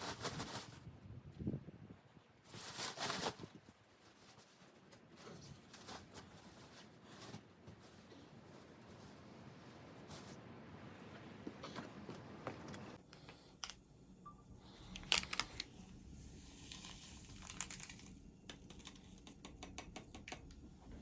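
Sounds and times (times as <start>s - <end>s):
crinkling rustles: 0.0s - 0.9s, 2.4s - 13.0s, 16.6s - 19.2s.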